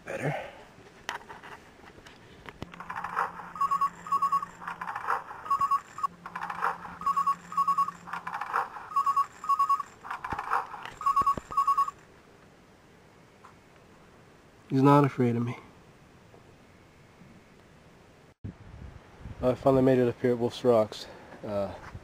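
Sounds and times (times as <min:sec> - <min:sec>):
low steady hum: 0:00.0 - 0:19.4
short high beeps: 0:03.6 - 0:04.6, 0:05.5 - 0:06.1, 0:07.0 - 0:08.0, 0:08.9 - 0:10.0, 0:11.0 - 0:12.0.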